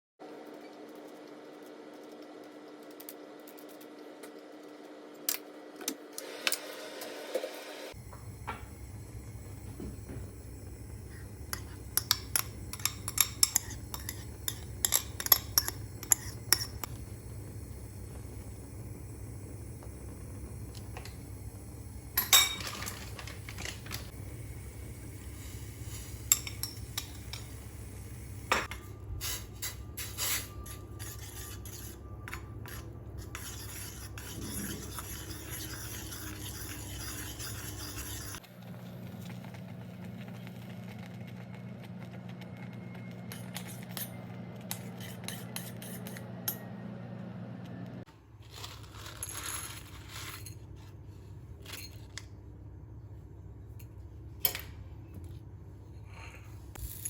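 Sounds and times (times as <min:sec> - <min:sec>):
kitchen appliance hum: 0:01.6 - 0:57.0
utensils and dishes clinking: 0:11.5 - 0:16.9, 0:22.2 - 0:24.1.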